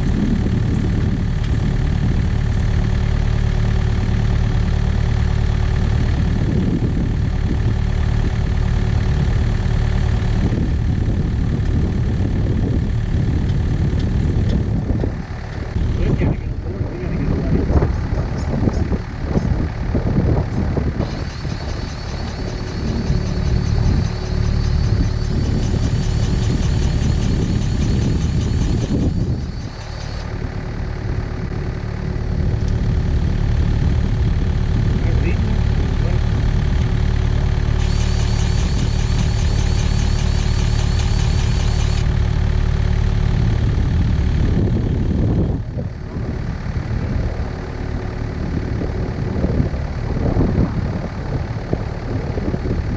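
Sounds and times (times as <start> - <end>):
excavator diesel engine running: 0.0 - 52.9
thin steady whine: 11.8 - 52.7.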